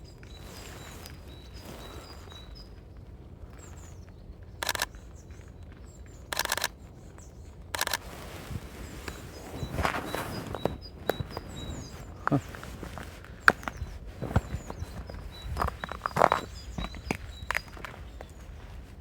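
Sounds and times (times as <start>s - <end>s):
low steady outdoor rumble: 0.0s - 19.0s
small birds chirping: 0.0s - 19.0s
camera shutter rapid clicks: 4.6s - 4.9s, 6.3s - 6.7s, 7.8s - 8.0s.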